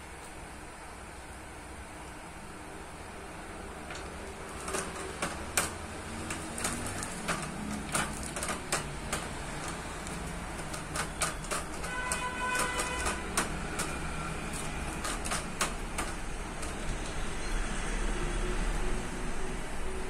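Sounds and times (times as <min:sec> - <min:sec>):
clicks and knocks of bicycle parts: 0:03.8 - 0:17.4.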